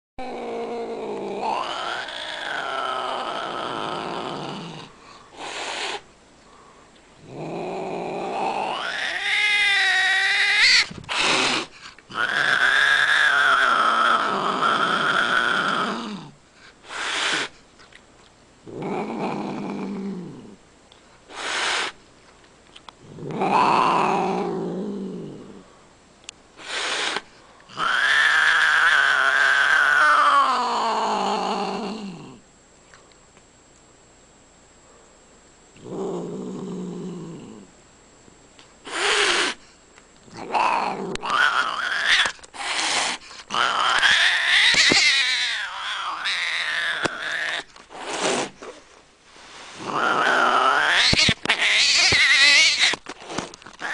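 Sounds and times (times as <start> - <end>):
cat yowling and growling: 0.2 - 6.0, 7.2 - 16.4, 23.1 - 25.6, 27.0 - 32.4, 40.3 - 48.6, 49.8 - 53.1
cat hissing: 0.2 - 6.1, 7.3 - 17.6, 21.3 - 22.0, 23.1 - 25.6, 26.6 - 32.4, 38.8 - 39.7, 40.3 - 53.9.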